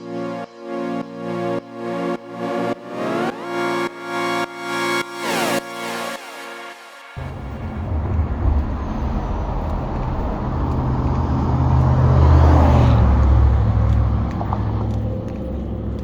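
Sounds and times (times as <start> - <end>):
highway traffic rumble: 7.2 - 16.0.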